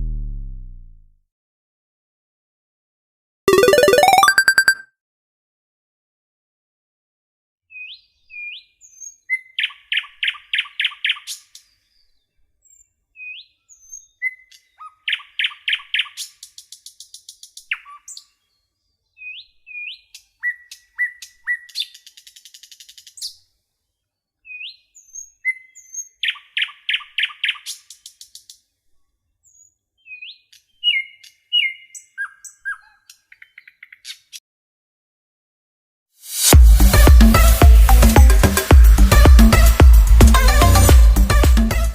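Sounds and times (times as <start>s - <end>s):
songbird singing: 29.5s - 34.3s.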